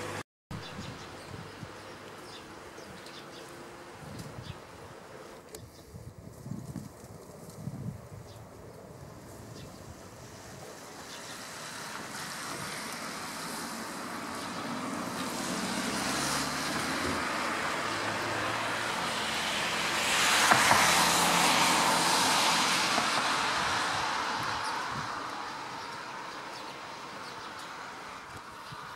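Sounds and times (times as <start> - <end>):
vehicle passing by: 9.2 - 28.9.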